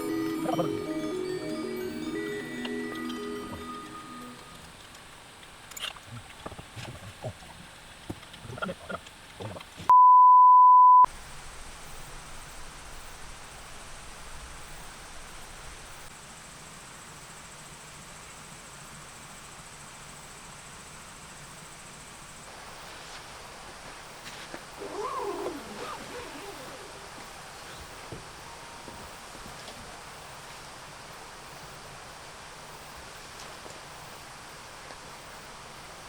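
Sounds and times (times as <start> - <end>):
background hiss: 0.0 - 9.9, 11.1 - 36.0
electronic beep: 9.9 - 11.1
short wavering call: 24.8 - 29.5.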